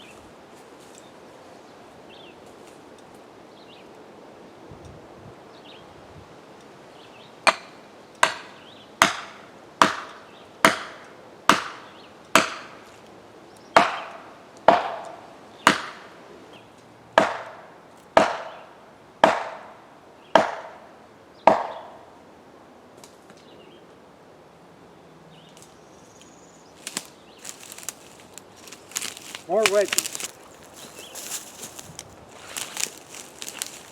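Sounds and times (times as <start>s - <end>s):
hammer striking felling wedge: 7.5s - 11.8s, 12.4s - 12.8s, 13.8s - 16.1s, 17.2s - 17.6s, 18.2s - 18.5s, 19.2s - 19.7s, 28.6s - 33.9s.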